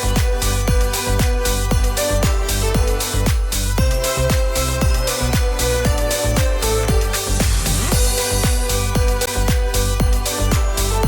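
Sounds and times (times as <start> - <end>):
electronic dance music: 0.0 - 11.0
steady kick drum: 0.0 - 11.0
rising noise sweep: 6.7 - 10.0.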